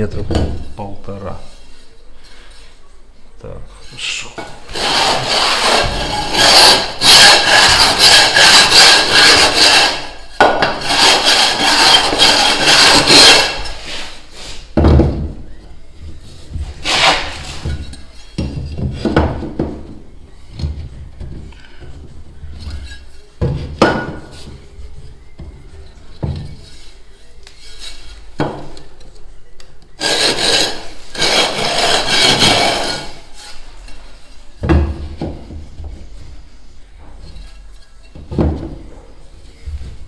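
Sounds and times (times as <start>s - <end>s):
rasp scraping stone tile: 4.7s - 14.6s, 16.7s - 18.0s, 30.0s - 33.7s
knocks and handling sounds: 10.4s - 40.0s.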